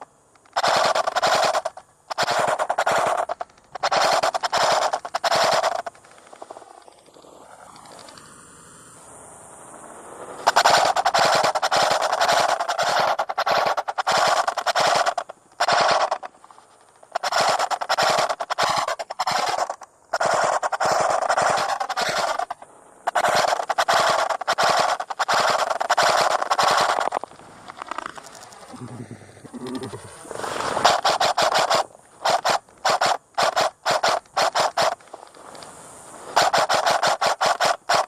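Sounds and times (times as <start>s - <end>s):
airsoft rifle bursts: 0.0s - 6.6s, 10.4s - 28.7s, 30.8s - 35.1s, 36.3s - 38.0s.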